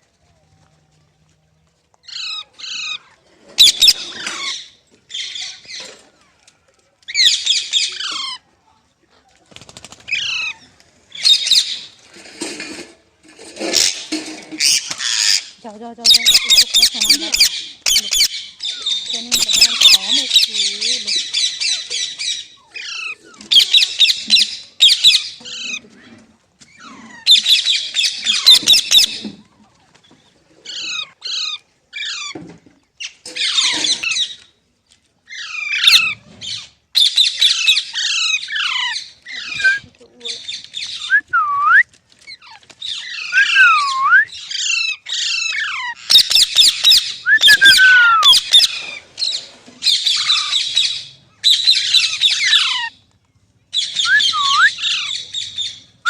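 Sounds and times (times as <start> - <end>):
parakeet screeching: 3.6 - 5.3, 14.6 - 24.2, 44.5 - 48.8
parakeet chirps: 16.1 - 25.2
whistled notes gliding: 47.2 - 48.4.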